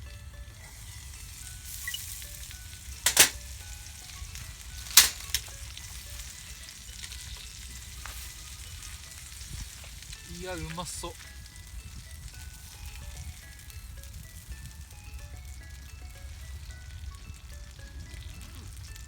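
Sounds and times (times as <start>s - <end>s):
meat sizzling on grill: 0.2s - 19.0s
sharp pops: 3.1s - 3.4s, 5.0s - 5.4s.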